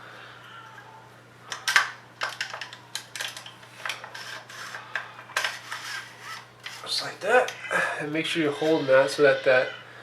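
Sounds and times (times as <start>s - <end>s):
shotgun parts clicking and scraping: 1.5s - 7.0s.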